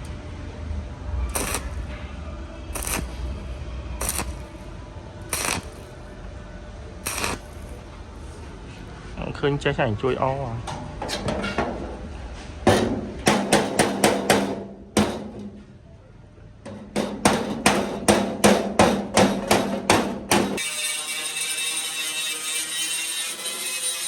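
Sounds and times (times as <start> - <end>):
steady hum: 0.9 - 8.5
hammer blows: 2.8 - 3.2, 4.0 - 4.5.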